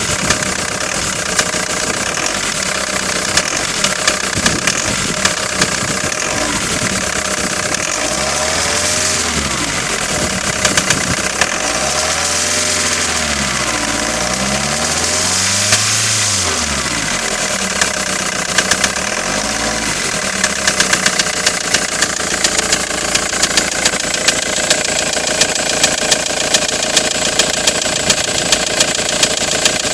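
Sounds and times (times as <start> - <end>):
diesel engine revving and idling: 0.0 - 29.9
sharp engine knocking: 0.1 - 8.2, 10.4 - 11.8, 17.7 - 19.1, 20.3 - 29.9.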